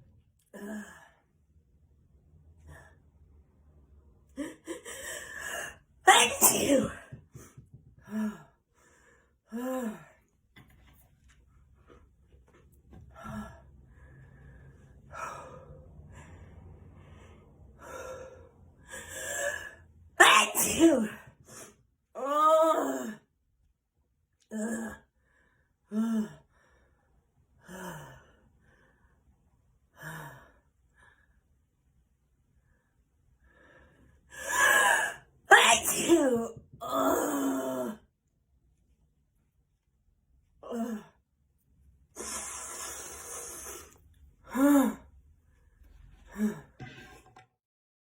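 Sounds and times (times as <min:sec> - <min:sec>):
person sneezing: 0:06.1 - 0:07.2, 0:20.2 - 0:21.2, 0:34.6 - 0:36.5
hissing in-breath: 0:42.2 - 0:44.0.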